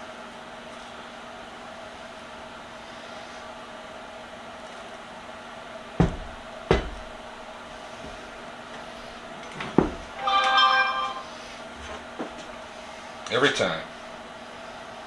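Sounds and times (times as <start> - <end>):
sharp knocks: 6.0 - 8.9, 9.6 - 11.2
brief multi-pitched tone: 10.2 - 11.4.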